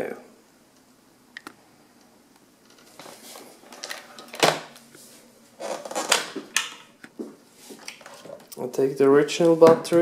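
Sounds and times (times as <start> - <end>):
plastic clatter and scraping: 2.7 - 4.7.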